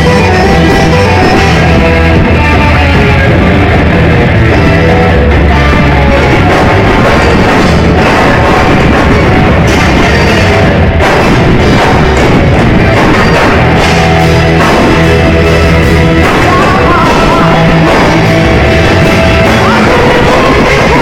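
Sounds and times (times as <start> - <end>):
live rock band playing: 0.0 - 21.0
person singing or shouting: 16.1 - 18.4, 19.2 - 21.0.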